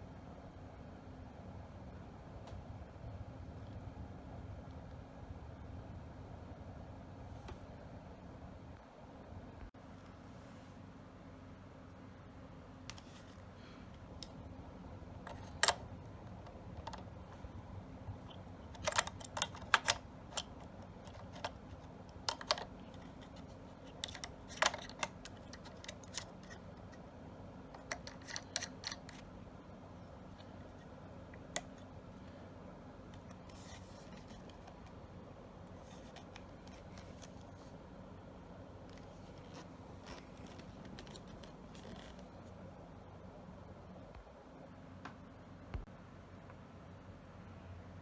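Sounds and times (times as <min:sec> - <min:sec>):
faint steady hum: 0:00.0 - 0:48.0
gun parts clicking and clacking: 0:15.3 - 0:17.1, 0:18.3 - 0:26.9, 0:27.8 - 0:29.2.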